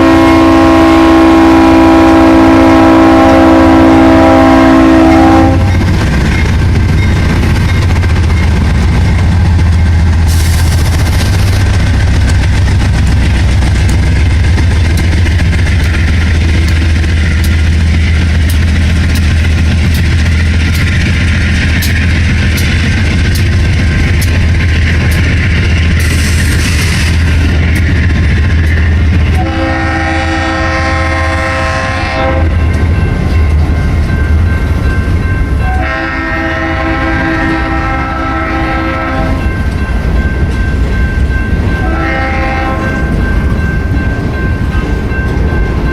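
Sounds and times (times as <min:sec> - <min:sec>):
locomotive air horn: 0:00.0 - 0:05.7, 0:29.4 - 0:32.6, 0:35.7 - 0:39.4, 0:41.8 - 0:43.0
freight train rumbling: 0:00.0 - 0:45.9.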